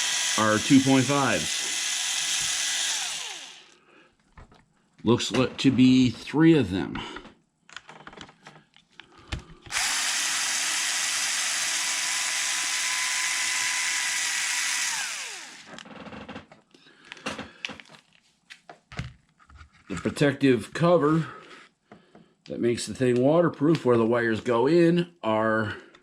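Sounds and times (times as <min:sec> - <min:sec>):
cordless electric driver whirring: 0:00.0 - 0:03.8, 0:09.7 - 0:15.8.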